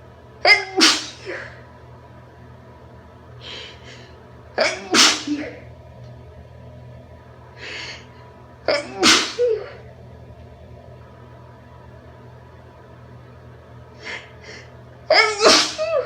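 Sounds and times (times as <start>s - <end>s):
woman sneezing: 0.5s - 1.6s, 4.6s - 5.6s, 8.7s - 9.8s, 15.1s - 16.0s
breathy inhale: 7.6s - 8.3s, 14.0s - 14.8s.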